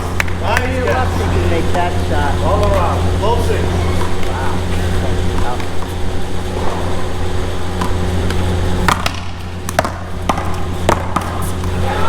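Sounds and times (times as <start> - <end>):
steady low rumble: 0.0 - 12.0
ball hitting wall: 7.8 - 11.9
paddles striking ball: 7.8 - 11.9.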